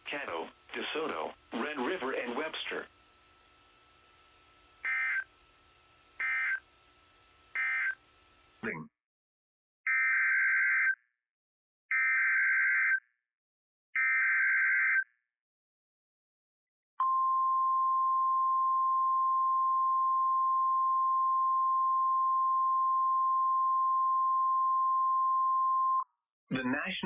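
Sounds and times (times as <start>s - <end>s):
warbling digital data bursts: 0.0s - 3.0s, 4.8s - 5.4s, 6.1s - 6.9s, 7.5s - 8.6s
steady warning alarm tone: 0.0s - 8.6s.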